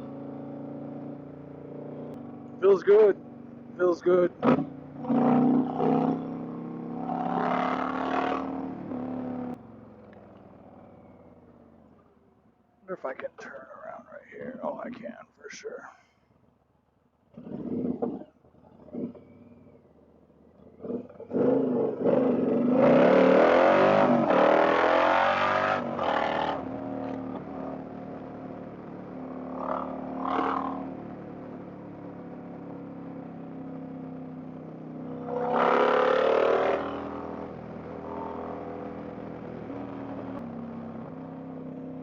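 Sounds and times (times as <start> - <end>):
motorcycle engine pulling hard: 17.3 - 19.8.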